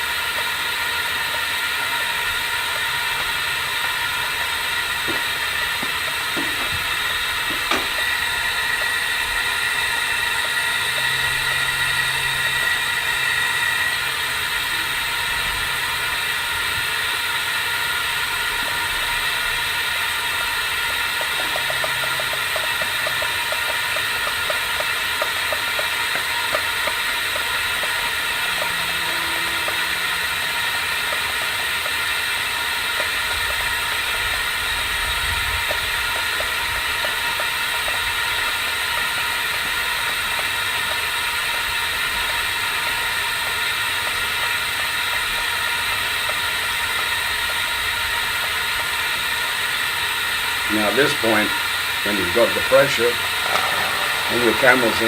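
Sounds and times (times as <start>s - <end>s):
compressed air hissing: 0.0s - 36.6s, 48.6s - 55.0s.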